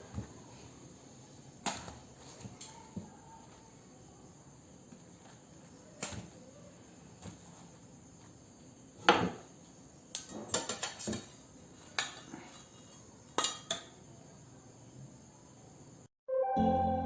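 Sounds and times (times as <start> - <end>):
utensils and dishes clinking: 10.2 - 14.0.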